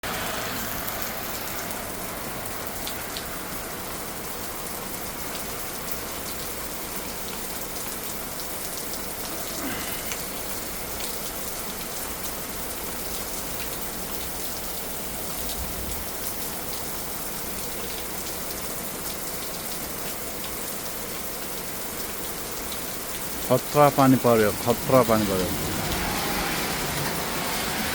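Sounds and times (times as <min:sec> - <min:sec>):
raindrops ticking on a surface: 0:00.1 - 0:27.9
heavy rain hissing: 0:08.1 - 0:17.4, 0:21.5 - 0:27.9.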